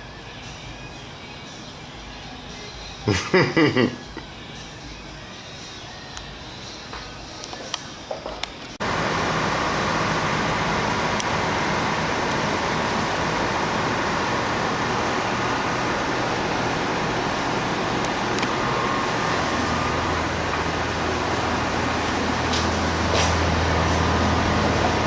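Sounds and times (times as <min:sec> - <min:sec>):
low hum: 0:08.8 - 0:25.0.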